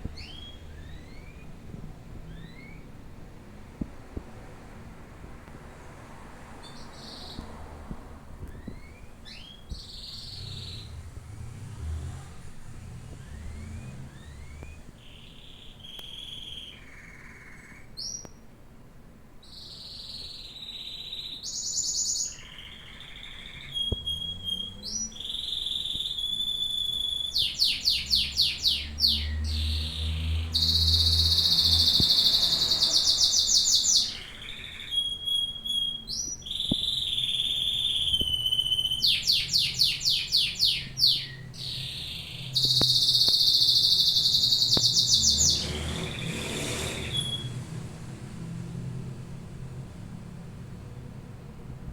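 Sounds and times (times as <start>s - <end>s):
canary singing: 0.0s - 3.0s, 6.6s - 7.5s, 8.4s - 11.4s, 13.0s - 18.4s, 19.4s - 47.8s.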